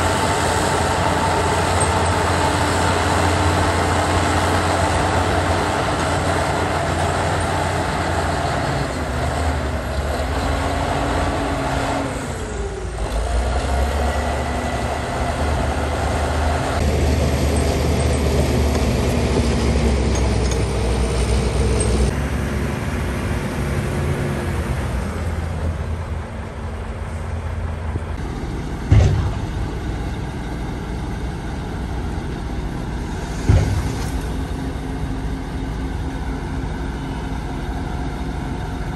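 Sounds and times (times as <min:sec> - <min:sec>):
heavy diesel machinery rumbling: 0:00.0 - 0:38.9
sharp bangs: 0:28.8 - 0:30.5.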